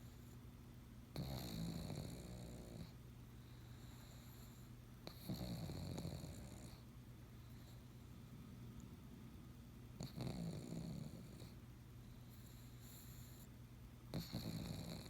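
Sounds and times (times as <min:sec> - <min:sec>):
dog snoring: 0:01.1 - 0:06.8, 0:10.0 - 0:13.5, 0:14.1 - 0:15.0
dog breathing quietly: 0:01.2 - 0:08.3, 0:10.0 - 0:15.0.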